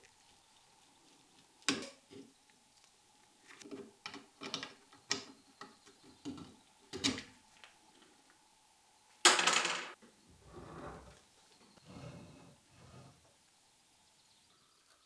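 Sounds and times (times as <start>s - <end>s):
tools clicking and knocking: 3.7s - 7.3s.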